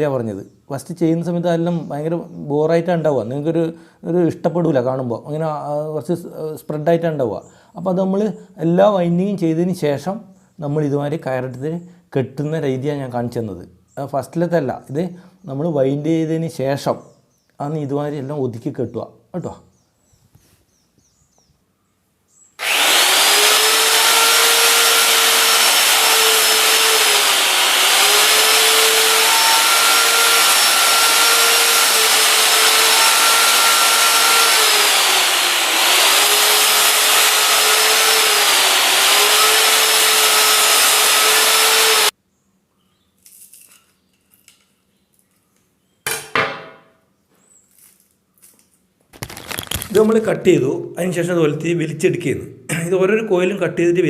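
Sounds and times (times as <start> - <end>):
electric cutting tool whining: 22.6 - 42.1.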